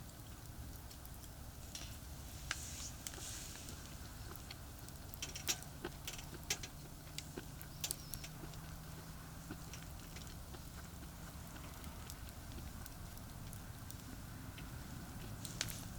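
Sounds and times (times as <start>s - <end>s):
fire crackling and popping: 0.0s - 15.9s
fire hissing: 1.0s - 15.9s
traffic drone: 1.3s - 15.9s.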